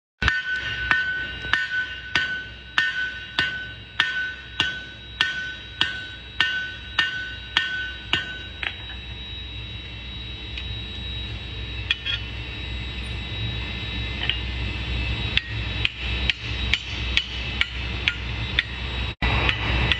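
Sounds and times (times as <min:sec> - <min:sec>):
hammer blows on steel anvil: 0:00.2 - 0:08.7
low steady hum: 0:00.2 - 0:19.9.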